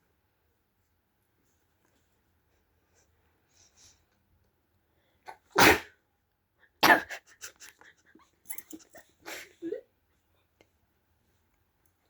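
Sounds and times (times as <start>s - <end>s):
person sneezing loudly: 5.3s - 6.0s, 6.8s - 7.2s.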